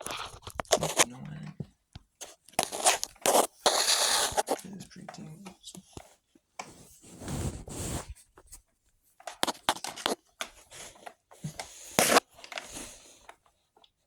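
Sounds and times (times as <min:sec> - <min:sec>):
power cord rustling and scraping: 0:00.0 - 0:01.1, 0:06.6 - 0:08.6.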